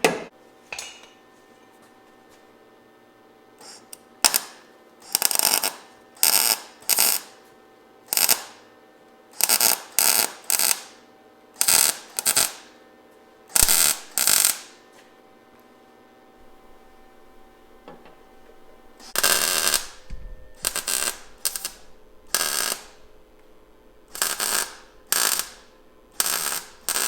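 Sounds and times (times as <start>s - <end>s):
welder crackling bursts: 3.6s - 7.4s, 8.1s - 8.6s, 9.4s - 11.0s, 11.6s - 12.7s, 13.5s - 14.8s, 16.4s - 27.0s.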